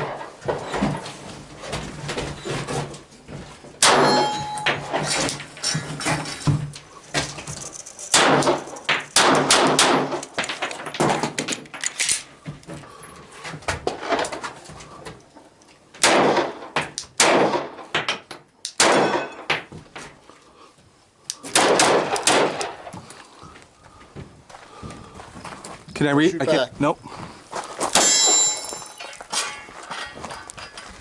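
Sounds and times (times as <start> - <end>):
gunshots with echo: 8.1 - 10.2, 16.0 - 16.6, 17.2 - 17.8, 21.5 - 22.8.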